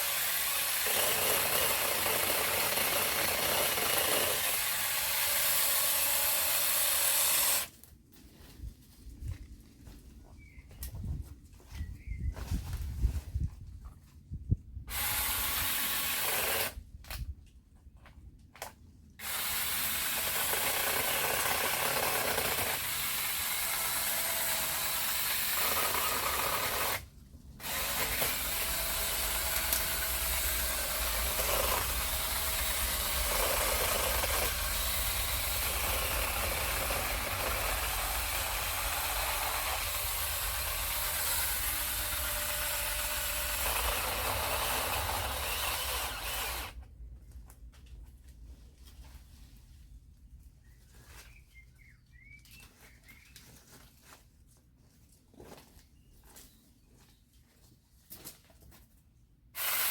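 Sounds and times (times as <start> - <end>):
cordless chainsaw whirring: 0.0 - 7.7, 14.9 - 16.8, 19.2 - 46.8, 59.6 - 59.9.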